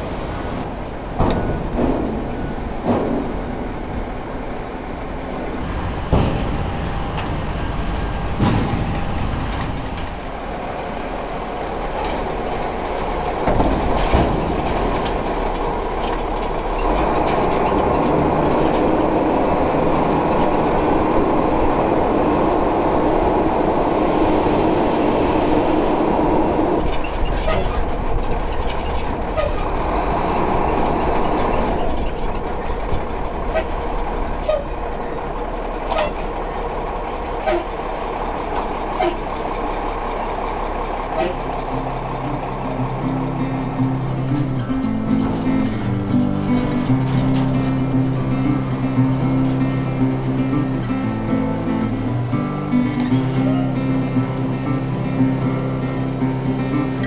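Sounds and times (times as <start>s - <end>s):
heavy vehicle rumbling and rattling: 0.0s - 57.0s
sharp knocks: 5.6s - 10.4s.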